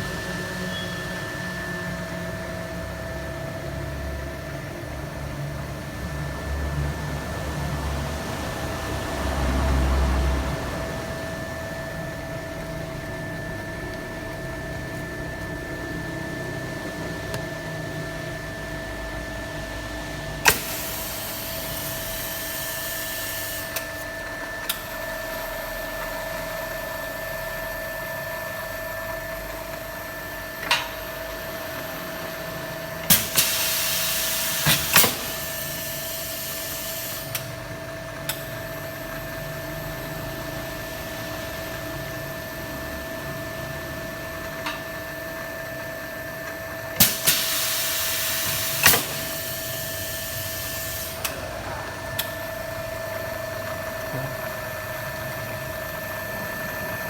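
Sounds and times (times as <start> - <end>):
pipe-cutting machine humming: 0.0 - 57.0
air hissing: 20.4 - 24.1, 33.0 - 37.5, 47.0 - 52.3.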